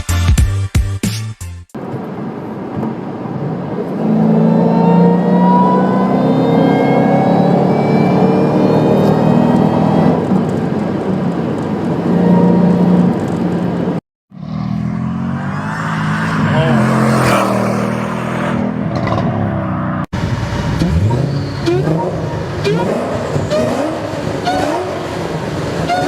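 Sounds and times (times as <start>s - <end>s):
rising whine: 2.9s - 10.2s, 14.4s - 23.3s
car engine accelerating: 3.8s - 26.0s.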